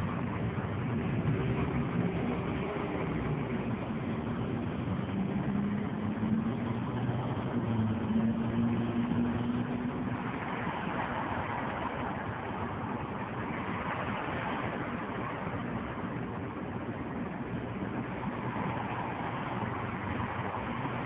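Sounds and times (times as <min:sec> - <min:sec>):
steady background noise: 0:00.0 - 0:21.0.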